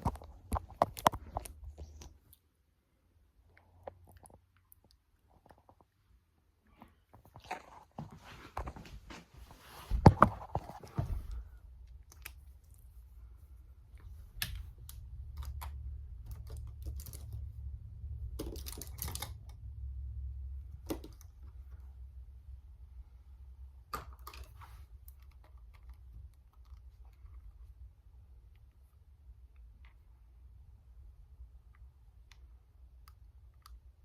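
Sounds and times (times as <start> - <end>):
low steady rumble: 10.9 - 34.0.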